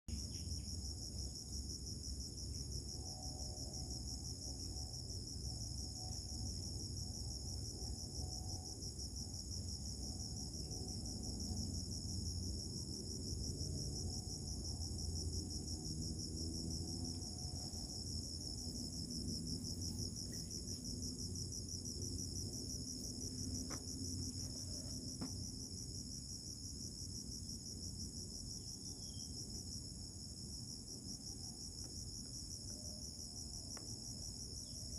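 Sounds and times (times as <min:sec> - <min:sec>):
insects trilling: 0:02.4 - 0:34.9
low background rumble: 0:10.8 - 0:27.7.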